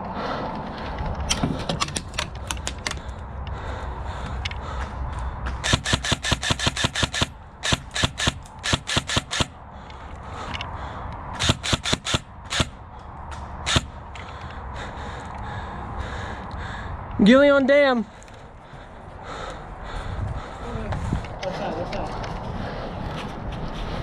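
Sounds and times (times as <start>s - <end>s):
airsoft guns firing: 5.6s - 9.6s, 11.4s - 12.8s, 13.7s - 14.0s.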